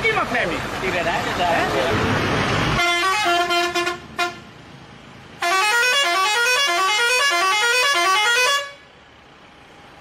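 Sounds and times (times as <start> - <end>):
musical bus horn: 2.8 - 4.5, 5.4 - 8.9.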